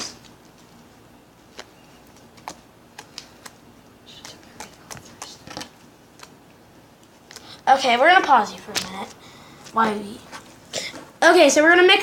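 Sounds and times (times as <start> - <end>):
slime kneaded by hand: 1.4 - 6.4.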